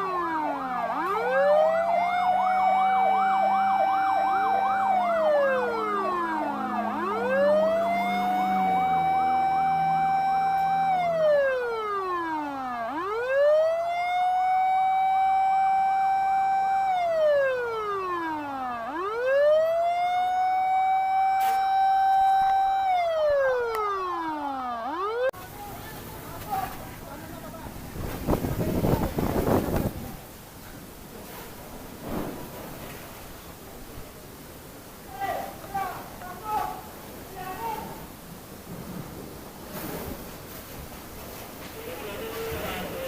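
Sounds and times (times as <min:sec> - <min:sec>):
warbling siren: 0:00.0 - 0:25.4, 0:42.0 - 0:43.0
fire engine siren wailing: 0:00.0 - 0:30.3, 0:41.7 - 0:43.0.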